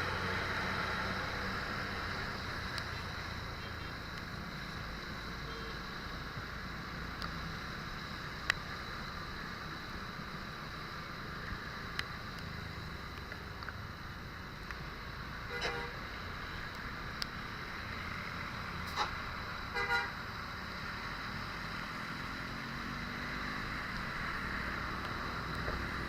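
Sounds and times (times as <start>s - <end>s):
road traffic rumble: 0.0s - 26.0s
bus multi-tone horn: 5.4s - 5.8s, 15.5s - 16.0s, 19.7s - 20.2s.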